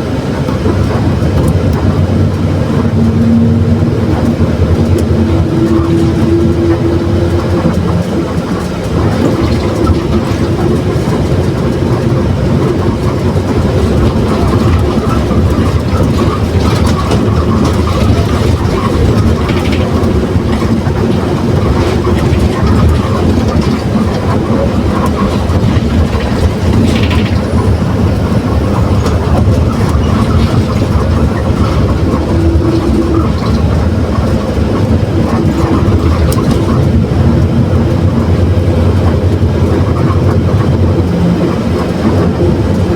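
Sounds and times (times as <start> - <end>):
bus engine running: 0.0 - 42.9
rear differential growling: 0.0 - 42.9
humming note: 2.2 - 8.8.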